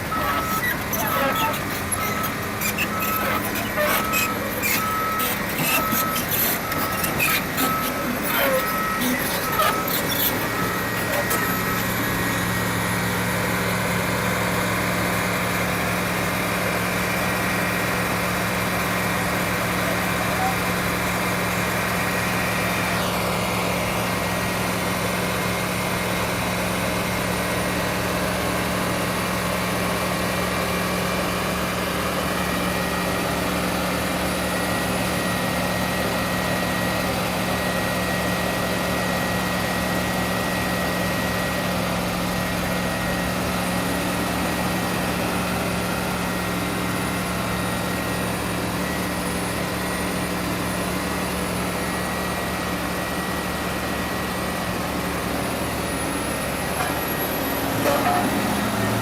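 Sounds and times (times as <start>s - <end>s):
diesel engine humming: 0.0s - 15.2s, 53.6s - 59.0s.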